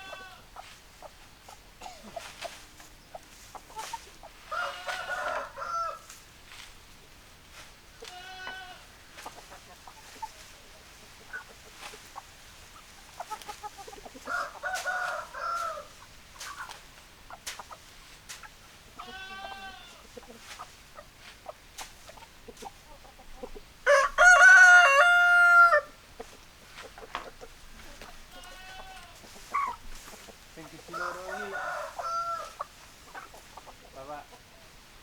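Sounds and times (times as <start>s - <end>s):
hens clucking: 0.0s - 35.0s
rooster crowing: 4.5s - 6.1s, 14.3s - 15.9s, 23.9s - 26.0s, 30.9s - 32.7s.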